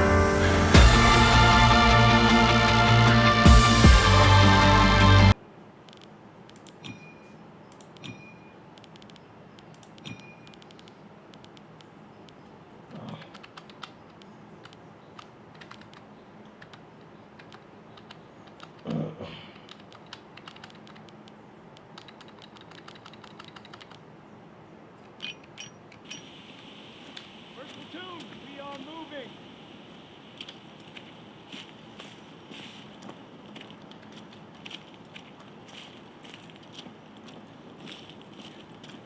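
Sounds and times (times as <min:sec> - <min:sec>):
keyboard key clicks: 0:13.2 - 0:18.9, 0:19.6 - 0:24.0.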